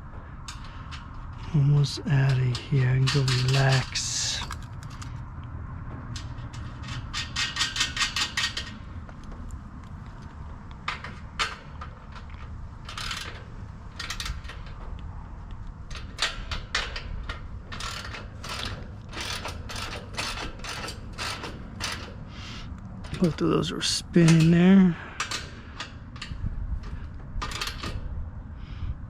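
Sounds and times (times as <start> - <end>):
ratchet wrench clicking: 17.8 - 22.2.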